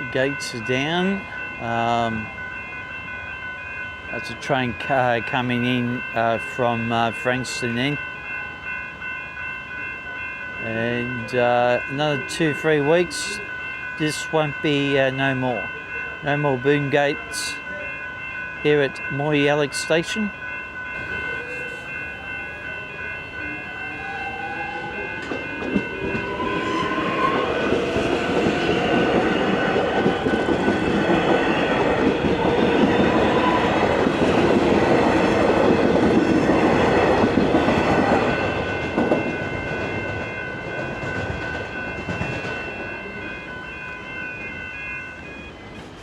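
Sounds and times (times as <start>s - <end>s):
crossing warning bells: 0.0s - 46.0s
electric train motors whining: 20.4s - 46.0s
train wheels clattering over rails: 25.1s - 42.9s.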